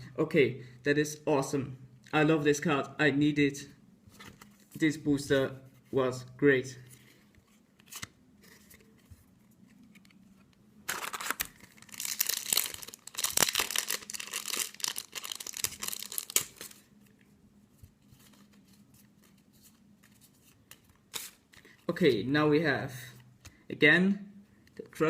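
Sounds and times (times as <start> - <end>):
foil wrapper tearing and crinkling: 10.9 - 16.8.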